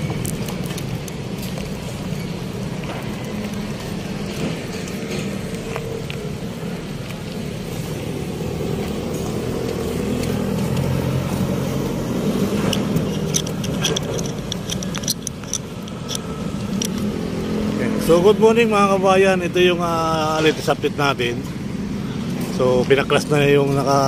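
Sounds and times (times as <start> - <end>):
vehicle engines passing: 0.0 - 24.0
sharp clicks: 12.4 - 17.1.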